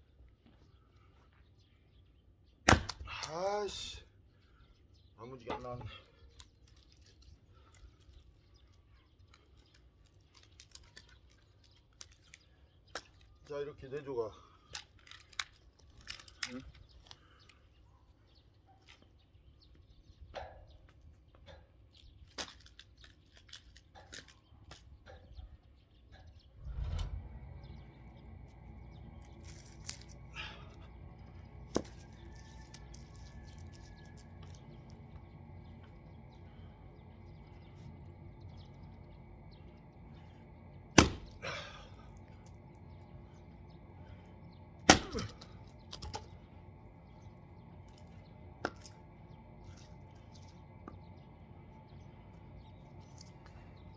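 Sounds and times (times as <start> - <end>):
axe splitting firewood logs: 2.6 - 3.9, 29.2 - 34.6, 40.9 - 42.4, 44.4 - 46.4, 48.6 - 49.0
low mechanical hum: 19.4 - 53.9.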